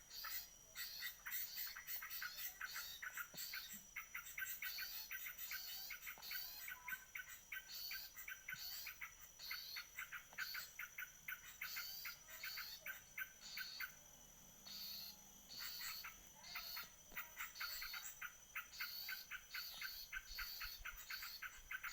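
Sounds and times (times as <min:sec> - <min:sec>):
bird chirping: 0:00.1 - 0:14.0, 0:14.6 - 0:21.9.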